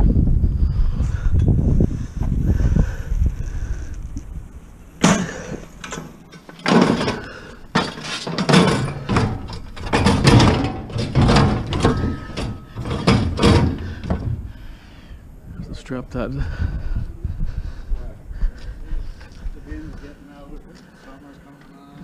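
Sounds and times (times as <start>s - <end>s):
heavy metal bangs and clanks: 5.0s - 14.7s.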